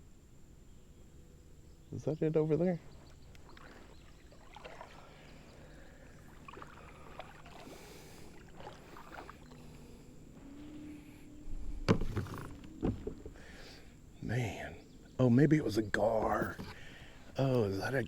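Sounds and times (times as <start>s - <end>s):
water against kayak hull: 2.7s - 18.0s
knocks against kayak hull: 11.8s - 13.4s, 16.2s - 16.9s.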